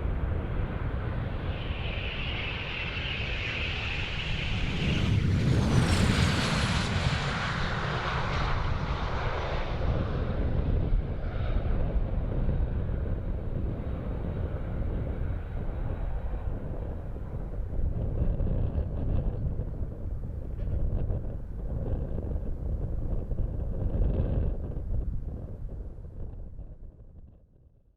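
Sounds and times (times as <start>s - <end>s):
jet passing with roar: 0.0s - 19.6s.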